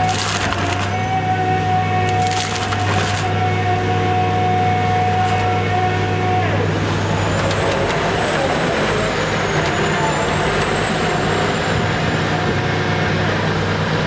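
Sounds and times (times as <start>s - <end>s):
diesel engine under load: 0.0s - 14.0s
thin high whine: 0.0s - 14.0s.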